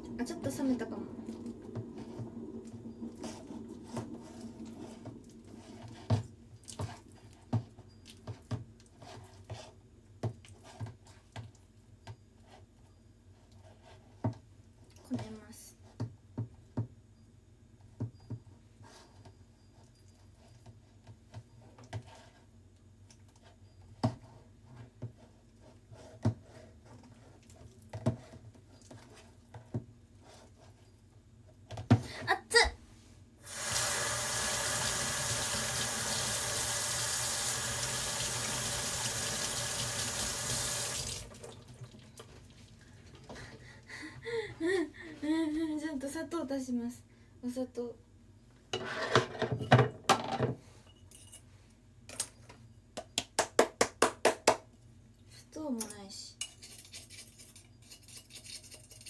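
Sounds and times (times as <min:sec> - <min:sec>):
tap running water into sink: 0:33.4 - 0:42.4.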